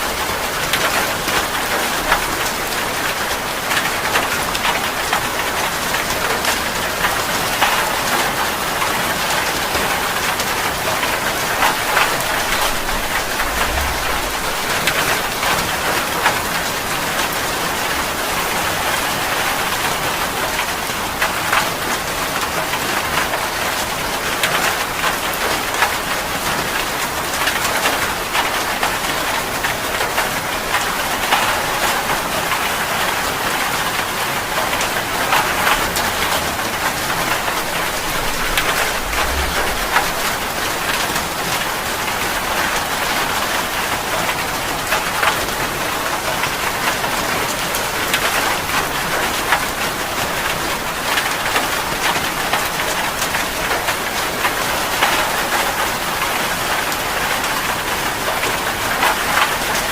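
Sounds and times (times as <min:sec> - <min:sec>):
heavy rain pattering: 0:00.0 - 0:59.9
brief low rumble: 0:12.2 - 0:15.6, 0:37.8 - 0:40.9.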